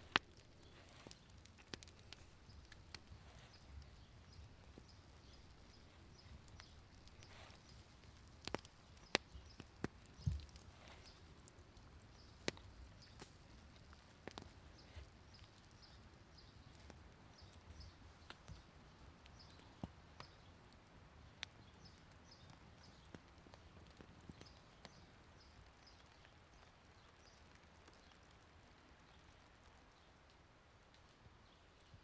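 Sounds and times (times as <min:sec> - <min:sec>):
small bird chirping: 0:00.0 - 0:13.2
sharp clicks and snaps: 0:00.0 - 0:16.0.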